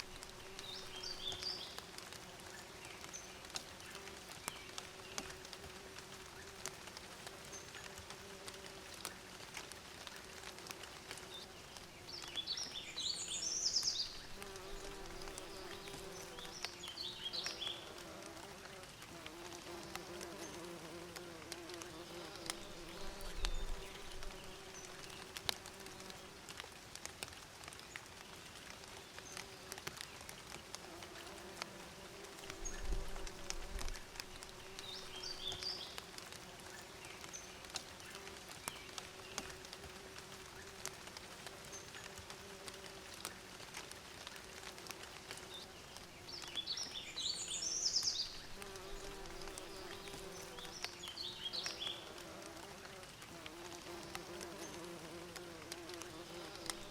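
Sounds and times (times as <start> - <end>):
bees buzzing: 48.4 - 51.0.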